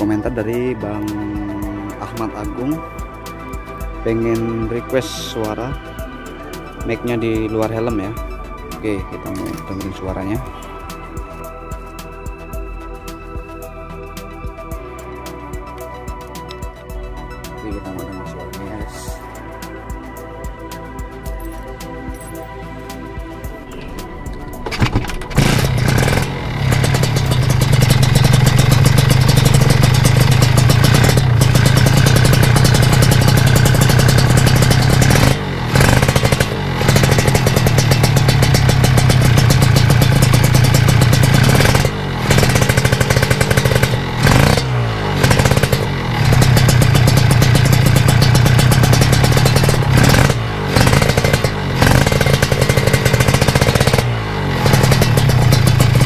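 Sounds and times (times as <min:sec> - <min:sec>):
motorcycle engine revving: 0:23.5 - 0:56.0.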